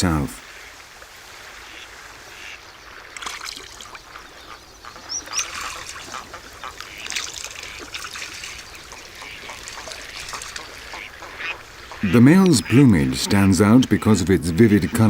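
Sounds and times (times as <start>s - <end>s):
water splashing and trickling: 0.0s - 15.0s
ducks quacking: 1.4s - 15.0s.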